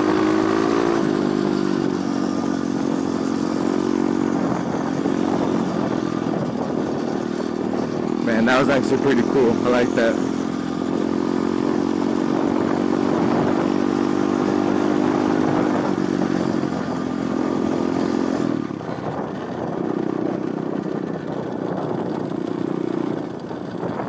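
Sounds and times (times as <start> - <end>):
pit bike engine running: 0.0 - 24.0.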